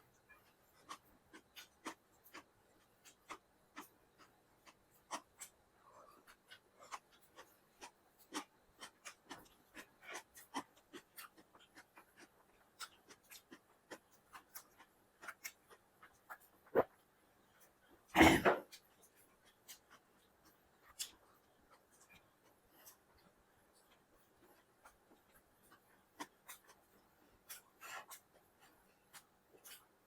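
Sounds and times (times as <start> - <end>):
chewing and wet mouth clicks: 0.8 - 5.6, 6.2 - 16.6, 18.7 - 30.0.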